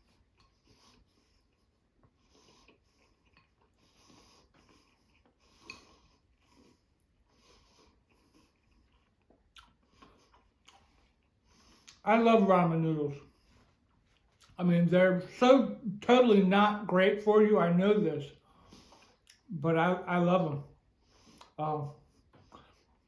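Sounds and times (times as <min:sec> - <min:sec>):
soft eating sounds: 0:00.0 - 0:14.6, 0:18.2 - 0:19.6, 0:20.4 - 0:23.0
faint breathing: 0:18.4 - 0:19.3.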